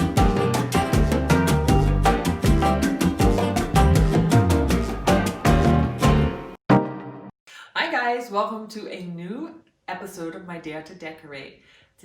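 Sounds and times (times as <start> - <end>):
background music with percussion and bass: 0.0 - 6.5.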